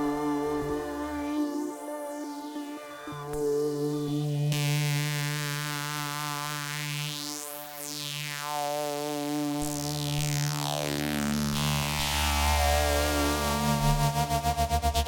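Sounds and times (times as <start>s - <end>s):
deep synth bass note: 0.0s - 1.6s
synth pad held low note: 0.0s - 7.1s.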